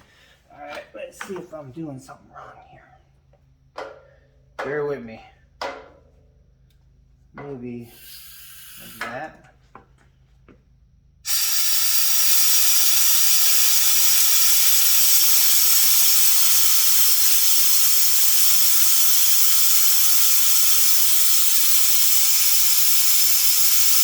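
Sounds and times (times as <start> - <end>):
compressed air hissing: 7.8 - 9.2, 11.2 - 24.0.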